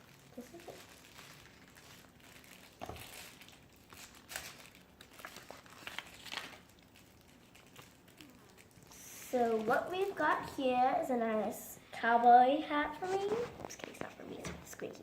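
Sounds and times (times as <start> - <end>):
plastic wrapper crinkling: 0.0 - 10.7.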